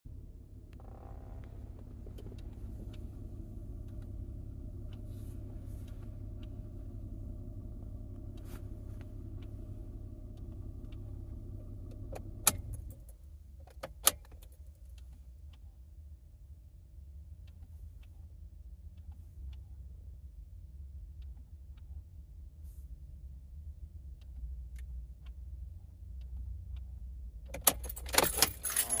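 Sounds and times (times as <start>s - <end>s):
electrical hum: 0.0s - 13.1s
faint tones: 0.1s - 12.8s
light ticks: 0.7s - 15.8s, 23.9s - 27.6s.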